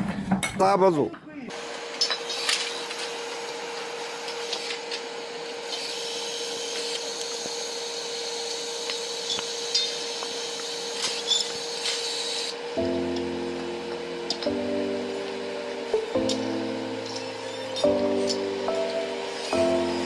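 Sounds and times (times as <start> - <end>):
machine humming: 12.1 - 20.0.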